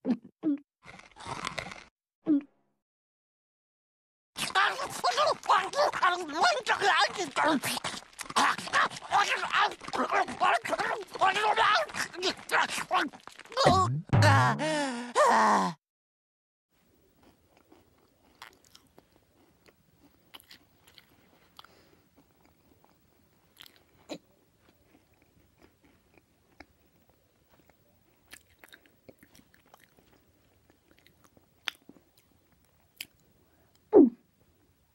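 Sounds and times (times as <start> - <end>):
chewing crunching bites: 0.8 - 1.9, 4.4 - 13.6, 17.2 - 33.2.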